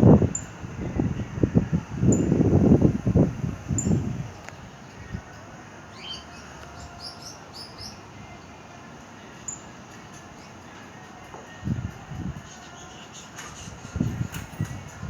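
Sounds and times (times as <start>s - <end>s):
wind rushing: 0.0s - 5.3s, 13.5s - 15.0s
small birds chirping: 2.0s - 5.3s, 5.9s - 8.1s, 9.4s - 11.0s, 11.9s - 15.0s.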